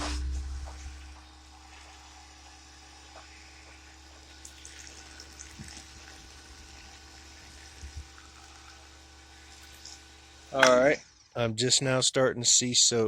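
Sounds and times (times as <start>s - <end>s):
pressure washer humming: 0.0s - 11.8s.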